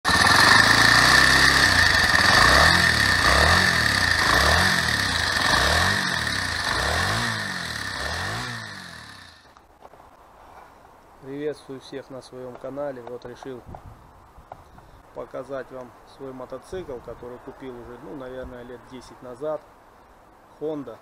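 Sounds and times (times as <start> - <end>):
motorcycle engine revving: 0.0 - 9.6.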